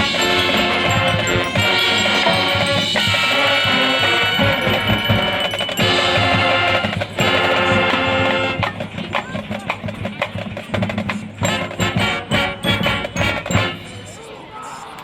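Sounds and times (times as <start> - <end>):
wind and brass chords: 0.0 - 9.0, 11.4 - 14.1
drumline beating: 0.0 - 14.1.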